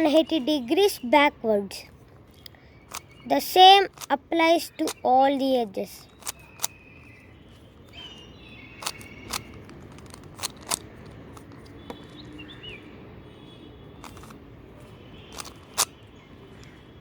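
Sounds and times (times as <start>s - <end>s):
plastic puzzle cube clicking: 2.4s - 3.2s, 3.8s - 7.1s, 8.8s - 12.2s, 14.0s - 14.4s, 15.3s - 16.0s.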